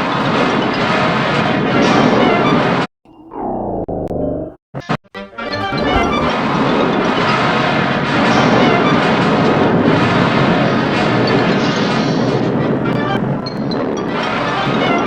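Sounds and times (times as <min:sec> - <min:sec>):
music: 0:05.2 - 0:08.5
stomach growling: 0:05.5 - 0:06.3.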